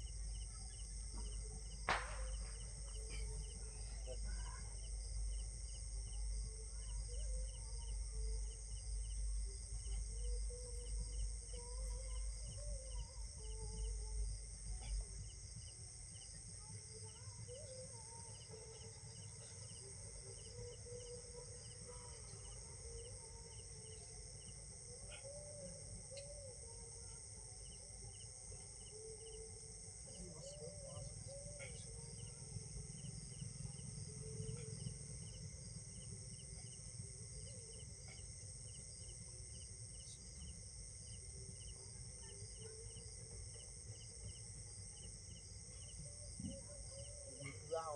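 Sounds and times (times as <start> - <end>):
insects droning and chirping: 0.0 - 47.9.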